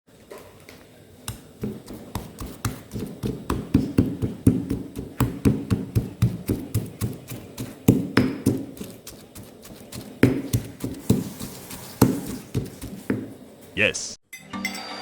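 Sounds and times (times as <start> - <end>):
pestle pounding in a mortar: 1.3 - 13.4.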